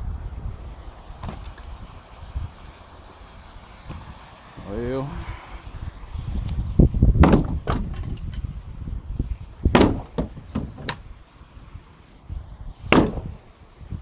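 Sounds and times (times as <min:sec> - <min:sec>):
heavy blows on wooden joist: 0:06.8 - 0:08.6, 0:09.6 - 0:11.1, 0:12.8 - 0:13.4.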